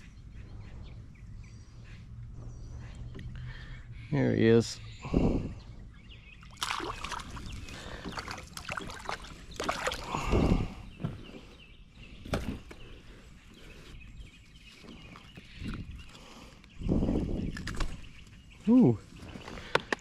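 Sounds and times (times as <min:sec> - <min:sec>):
water splashing and sloshing: 0:06.4 - 0:11.4.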